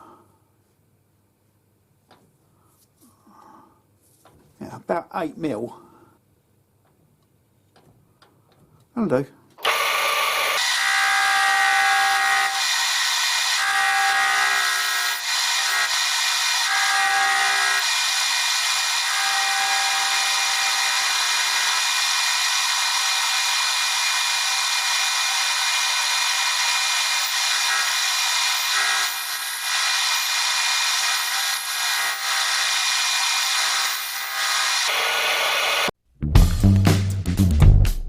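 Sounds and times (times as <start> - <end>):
power tool whining: 9.6 - 36.0.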